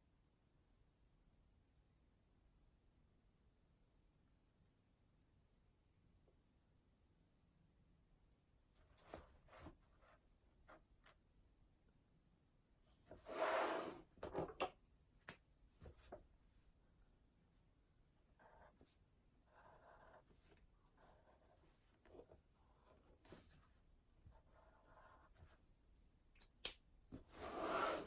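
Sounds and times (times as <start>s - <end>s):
pen scratching on paper: 18.3s - 23.7s, 24.3s - 25.6s, 27.4s - 28.0s.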